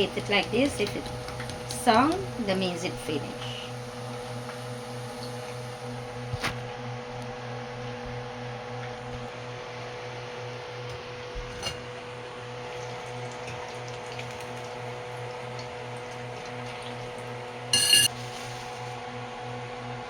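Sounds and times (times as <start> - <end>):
food frying in oil: 0.0 - 6.5, 11.6 - 19.1.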